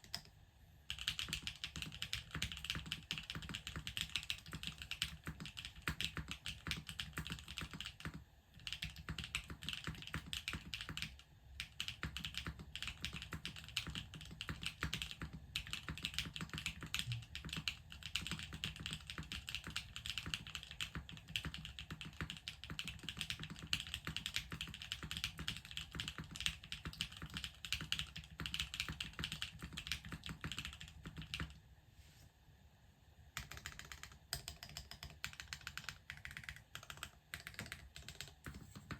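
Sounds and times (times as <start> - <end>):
typing on mechanical keyboard: 0.0 - 0.3, 0.9 - 31.6, 33.4 - 38.9.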